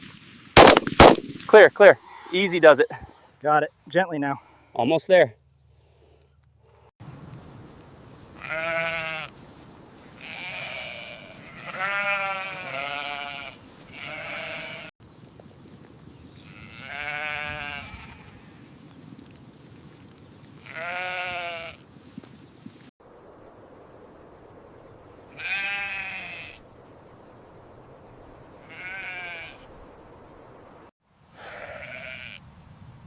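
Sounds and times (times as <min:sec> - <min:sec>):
sheep bleating: 0:08.4 - 0:09.4, 0:10.1 - 0:14.9, 0:16.4 - 0:18.6, 0:20.6 - 0:21.8, 0:25.3 - 0:26.6, 0:28.6 - 0:29.7, 0:31.4 - 0:32.4.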